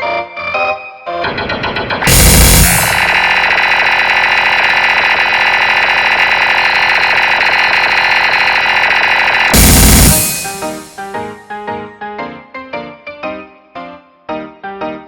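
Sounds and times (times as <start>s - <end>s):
keyboard note cluster pulsing: 2.0s - 11.2s
loud hit: 2.0s - 11.2s.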